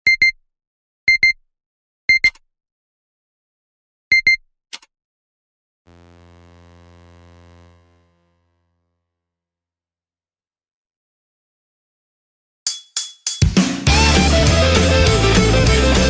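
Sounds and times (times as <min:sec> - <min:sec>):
low electronic buzz: 0:05.9 - 0:09.1.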